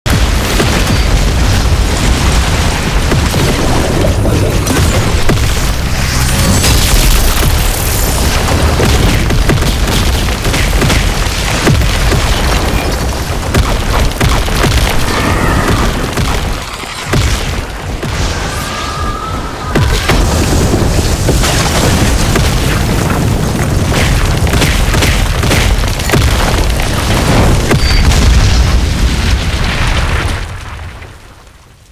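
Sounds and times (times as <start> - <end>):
bomb explosion rumble and booms: 0.1 - 31.9.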